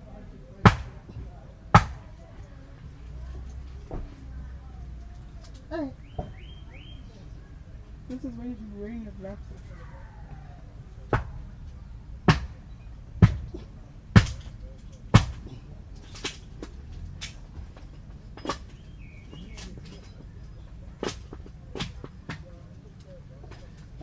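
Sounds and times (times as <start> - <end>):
loud sharp knocks: 0.7 - 2.2, 11.1 - 11.4, 12.3 - 12.6, 13.2 - 13.6, 14.2 - 14.5, 15.2 - 15.6.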